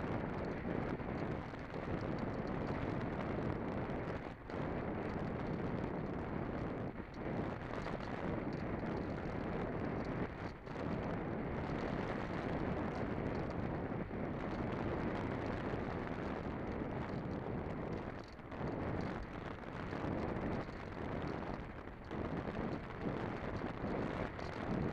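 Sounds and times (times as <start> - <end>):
wind rushing on microphone: 0.0 - 24.9.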